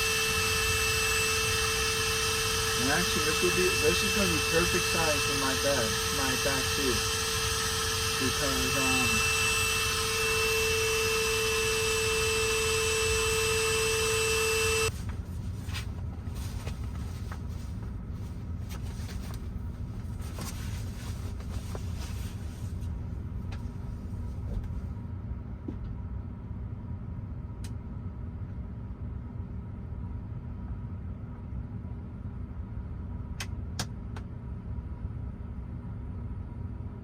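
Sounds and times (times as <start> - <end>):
electric air pump whining: 0.0 - 24.8
low steady rumble: 14.9 - 37.0.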